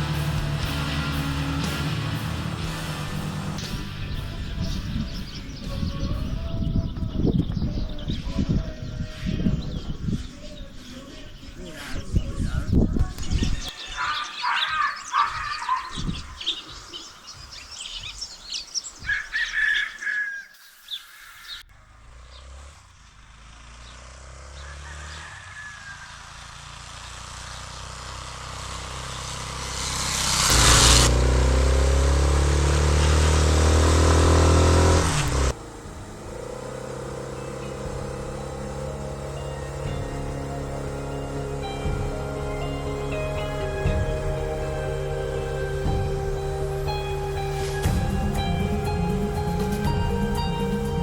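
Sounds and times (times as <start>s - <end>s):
motorcycle engine running: 0.0s - 10.1s, 21.8s - 51.0s
birds chirping: 0.0s - 51.0s.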